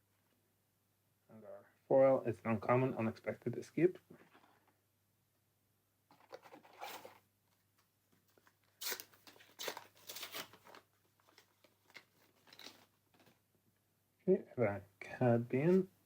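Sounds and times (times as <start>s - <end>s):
wrapper tearing and crinkling: 8.7s - 12.9s.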